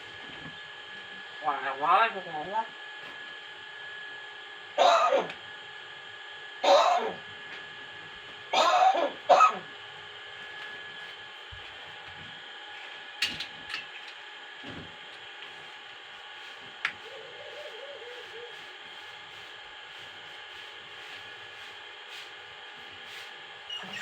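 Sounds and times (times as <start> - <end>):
myna bird imitating a cough: 4.8 - 5.3, 6.6 - 7.2, 8.5 - 9.7.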